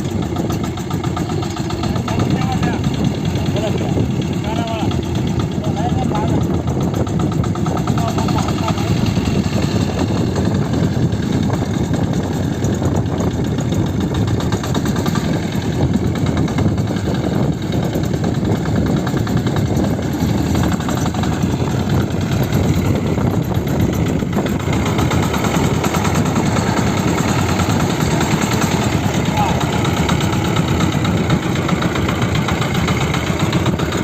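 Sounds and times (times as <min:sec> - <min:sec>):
motorcycle engine running: 0:00.0 - 0:34.0.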